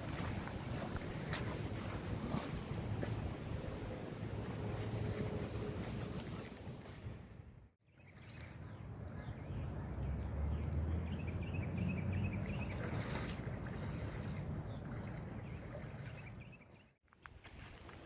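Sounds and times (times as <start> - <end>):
creek water flowing: 8.0 - 18.0.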